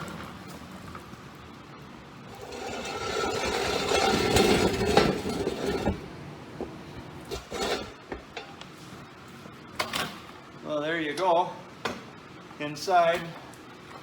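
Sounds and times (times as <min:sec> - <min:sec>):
scraping and rubbing handling noise: 0:02.3 - 0:09.4.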